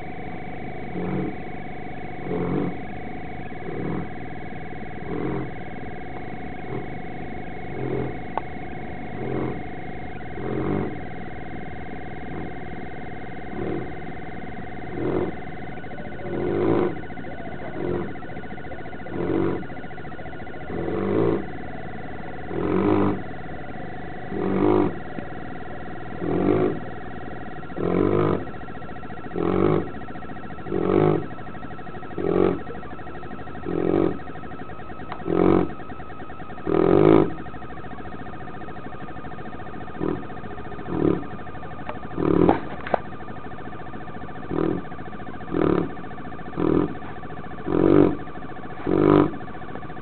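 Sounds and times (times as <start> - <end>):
dog snoring: 0.8 - 1.6, 2.2 - 4.2, 4.9 - 5.6, 6.5 - 7.0, 7.6 - 11.2, 13.4 - 14.0, 14.7 - 21.7, 22.4 - 32.9, 33.6 - 34.4, 35.0 - 35.9, 36.6 - 37.5, 39.8 - 43.0, 43.7 - 49.5.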